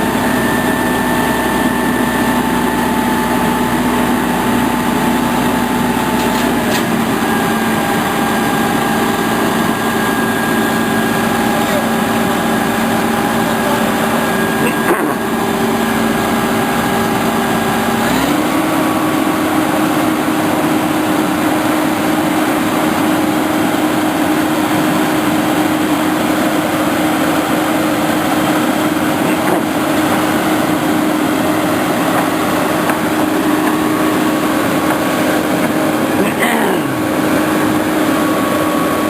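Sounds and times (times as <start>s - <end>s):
machine engine running: 0.0s - 39.0s.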